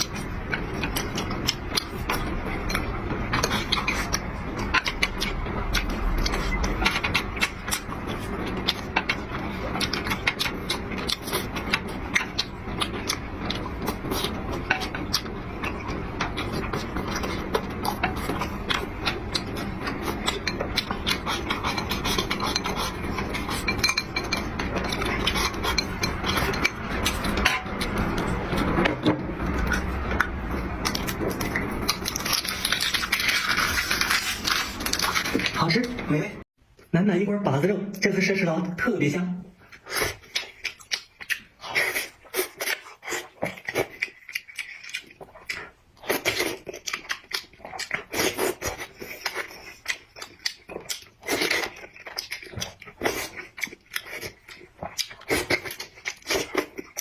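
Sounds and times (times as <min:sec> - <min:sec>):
chewing and smacking: 0:00.0 - 0:35.9, 0:39.6 - 0:57.0
utensils scraping dishes: 0:13.0 - 0:36.1.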